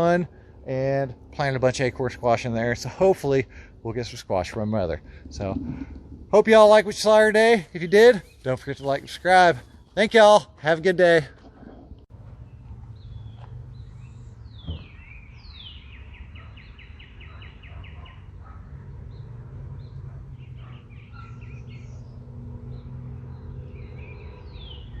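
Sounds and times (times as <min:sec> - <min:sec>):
birds singing: 0:00.0 - 0:10.4, 0:12.3 - 0:25.0
low rumble: 0:04.6 - 0:06.7
brief knock: 0:14.6 - 0:14.9.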